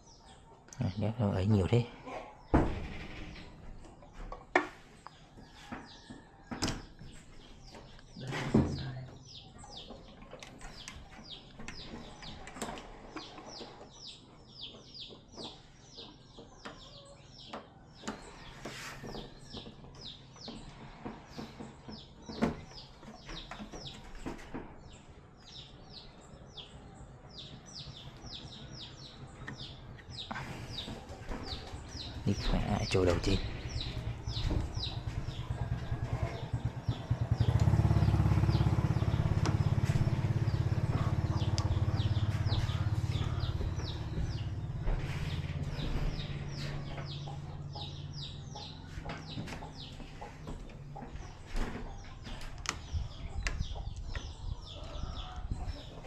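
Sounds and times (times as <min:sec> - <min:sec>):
birds chirping: 0:00.0 - 0:56.0
sharp knocks and clicks: 0:30.9 - 0:47.4.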